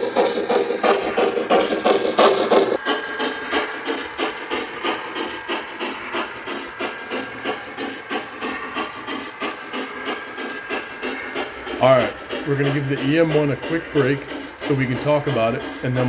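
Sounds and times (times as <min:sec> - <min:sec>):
model steam locomotive chuffing: 0:00.0 - 0:16.0.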